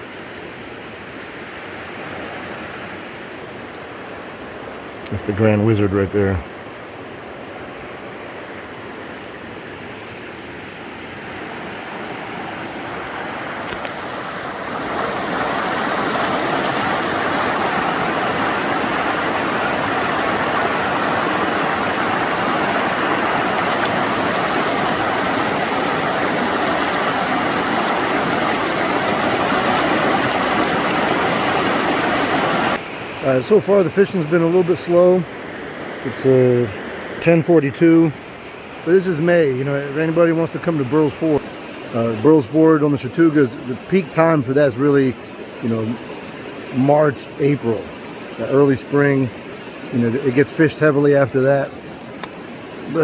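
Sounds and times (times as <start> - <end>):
river rushing over rocks: 6.3 - 37.6.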